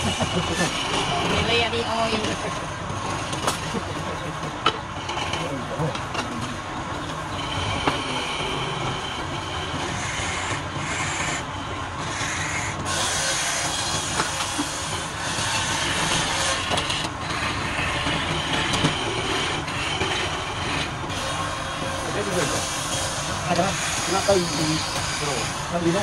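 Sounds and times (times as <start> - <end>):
wood lathe running: 0.0 - 26.0
turning tool cutting hiss: 12.9 - 17.5, 21.1 - 26.0.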